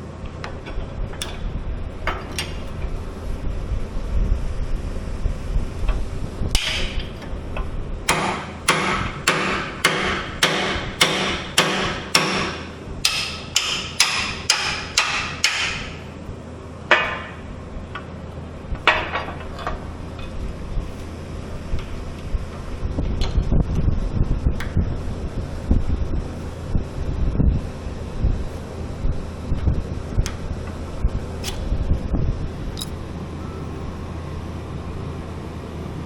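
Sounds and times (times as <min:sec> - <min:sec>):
hammer striking metal: 0:06.6 - 0:07.1, 0:08.1 - 0:16.1.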